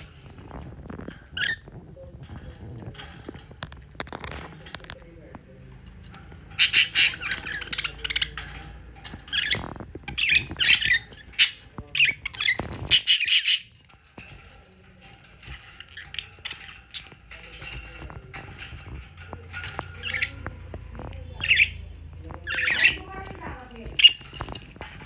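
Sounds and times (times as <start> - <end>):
budgerigar chirping and squawking: 6.5 - 8.5, 9.3 - 13.8, 19.9 - 20.6, 21.3 - 24.4.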